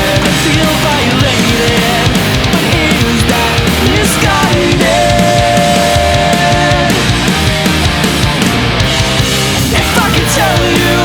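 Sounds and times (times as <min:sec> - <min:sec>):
punk rock band playing: 0:00.0 - 0:11.0.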